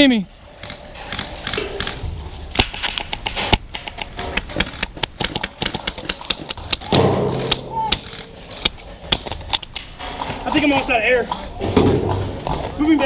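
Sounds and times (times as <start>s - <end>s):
airsoft guns firing: 0.6s - 9.6s.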